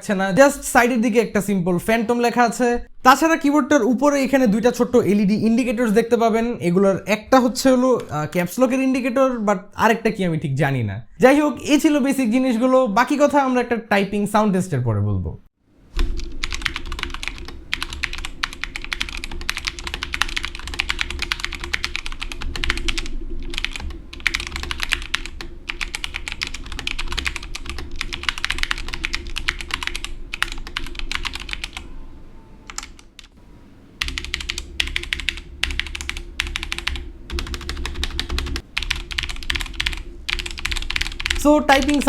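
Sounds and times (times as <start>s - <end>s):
mechanical keyboard typing: 16.0s - 31.9s, 32.7s - 33.4s, 34.0s - 42.0s.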